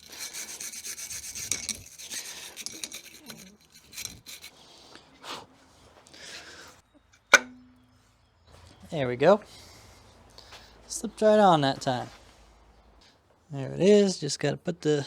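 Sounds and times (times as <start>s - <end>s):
abrasive scrubbing rust off metal: 0.0s - 4.6s.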